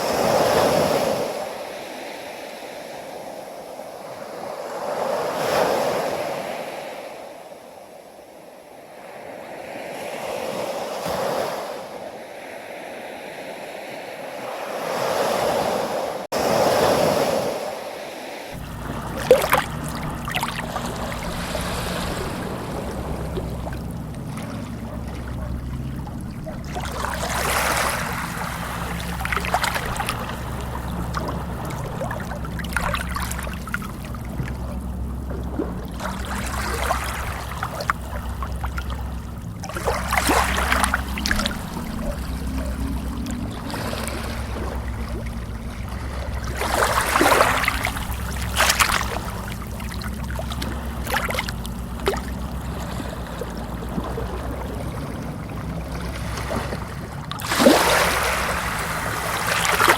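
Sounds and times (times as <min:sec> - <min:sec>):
sea waves washing: 0:08.9 - 0:59.9
water splashing and trickling: 0:18.5 - 0:59.9
steady low hum: 0:18.6 - 0:59.9.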